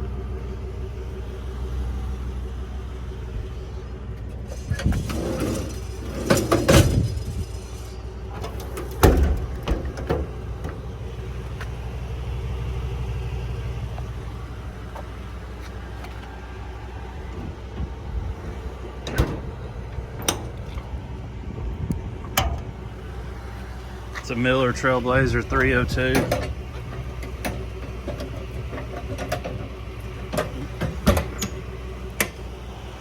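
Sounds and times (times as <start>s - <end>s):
truck idling: 0.0s - 33.0s
doors and hatches knocking shut: 4.8s - 7.4s, 8.4s - 10.8s, 30.4s - 31.6s.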